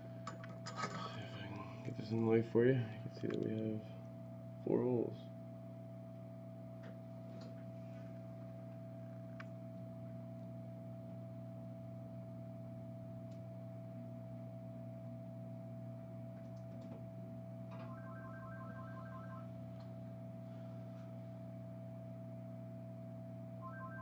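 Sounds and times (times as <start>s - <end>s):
electrical hum: 0.0s - 24.0s
faint small clicks: 3.2s - 3.7s, 13.2s - 13.5s.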